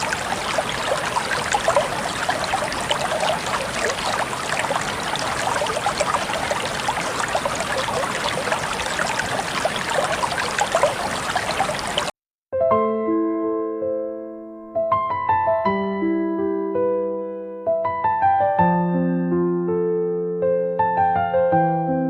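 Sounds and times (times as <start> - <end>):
waterfall rushing and splashing: 0.0 - 12.1.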